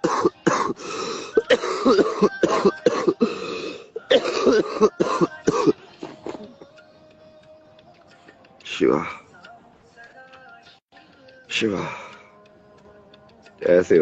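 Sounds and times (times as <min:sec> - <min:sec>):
man coughing: 0:00.0 - 0:06.6.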